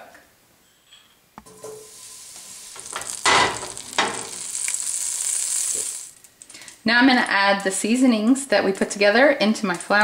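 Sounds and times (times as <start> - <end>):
butter sizzling in a hot pan: 1.4 - 6.7
butter hitting a pan: 2.7 - 6.1.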